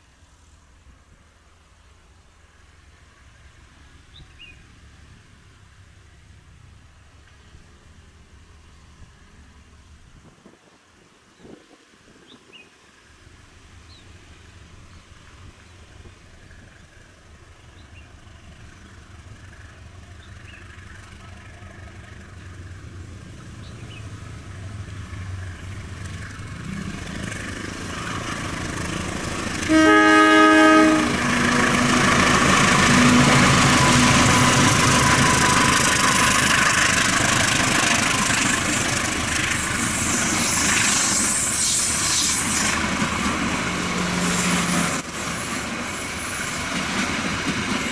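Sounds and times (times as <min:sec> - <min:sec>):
wind of passing carriages: 0:00.0 - 0:47.9
wheel and rail noise: 0:12.2 - 0:47.9
train rumble: 0:12.9 - 0:47.9
locomotive horn blast: 0:29.5 - 0:36.4.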